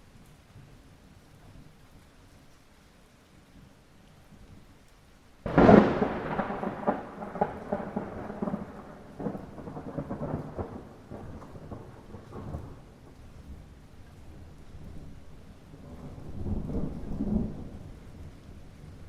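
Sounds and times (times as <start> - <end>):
light rain hiss: 0.0 - 19.0
thunder crack and rumble: 5.4 - 19.0.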